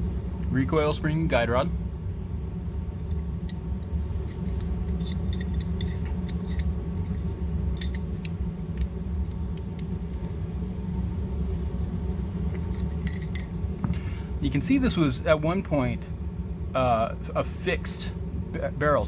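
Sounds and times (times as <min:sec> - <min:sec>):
low hum: 0:00.0 - 0:19.0
metallic clicks of pistol parts: 0:07.8 - 0:10.4.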